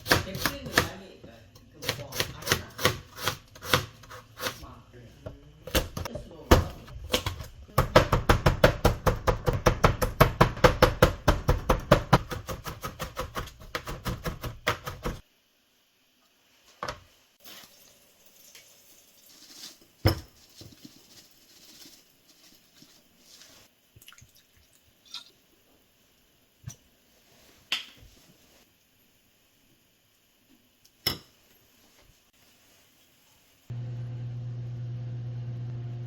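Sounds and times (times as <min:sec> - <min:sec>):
small kitchen clicks: 0:05.6 - 0:15.2
knife chopping on cutting board: 0:05.8 - 0:15.2.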